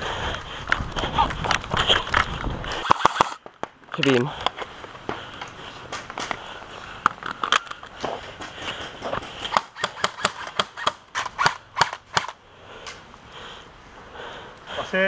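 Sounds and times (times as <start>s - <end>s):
airsoft guns firing: 2.8s - 3.4s, 9.5s - 12.4s.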